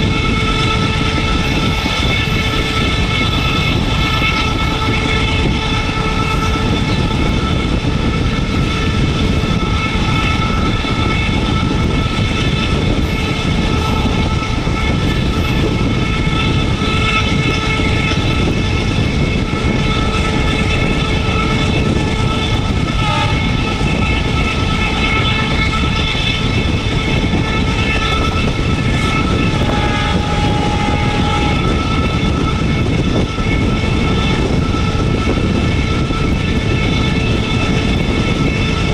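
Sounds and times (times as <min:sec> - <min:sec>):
diesel locomotive rumbling: 0:00.0 - 0:38.9
high whine: 0:00.0 - 0:38.9.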